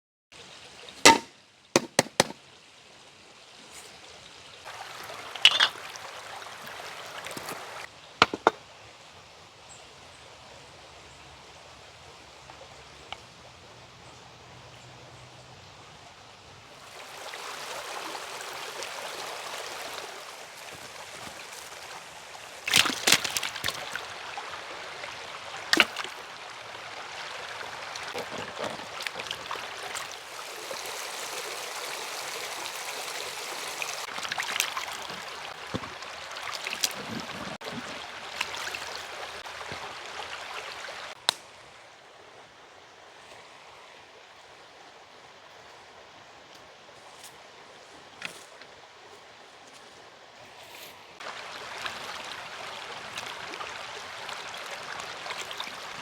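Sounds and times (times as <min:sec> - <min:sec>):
stream water running: 0:00.3 - 0:56.0.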